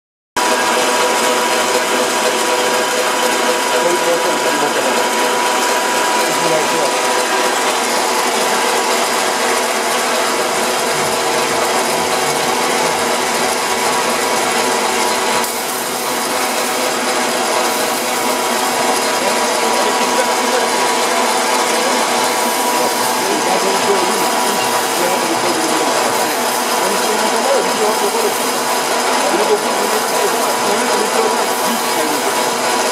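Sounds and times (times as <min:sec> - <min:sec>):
boring machine whirring: 0:00.4 - 0:32.9.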